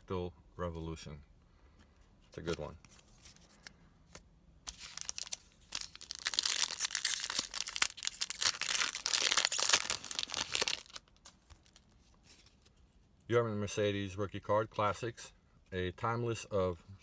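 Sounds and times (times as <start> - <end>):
foil wrapper crinkling and tearing: 4.7 - 12.5.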